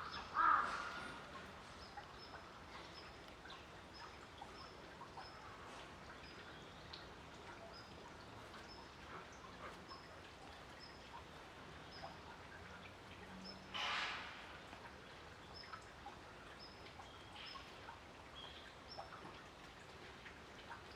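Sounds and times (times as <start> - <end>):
light ticks: 1.3 - 5.4.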